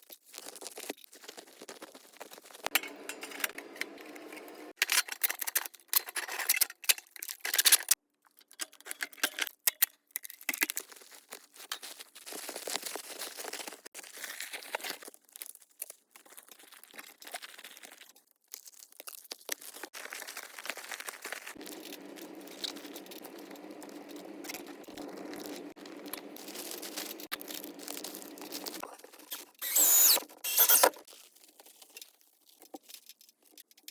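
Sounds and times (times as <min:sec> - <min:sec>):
scraping and tapping handling noises: 0:00.5 - 0:10.9, 0:21.6 - 0:33.9.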